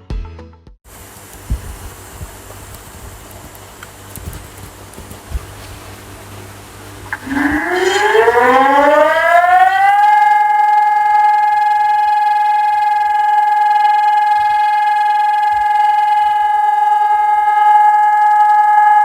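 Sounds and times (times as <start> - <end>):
siren steady tone: 6.0 - 19.0.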